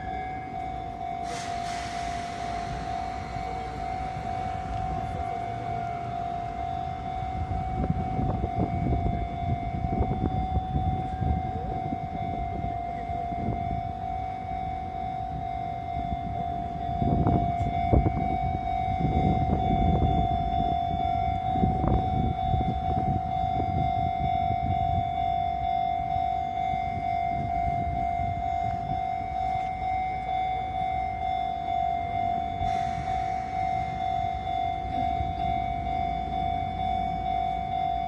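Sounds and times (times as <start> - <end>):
level-crossing alarm ringing: 0.0 - 38.0
train rumble and wheel clatter: 0.0 - 38.0.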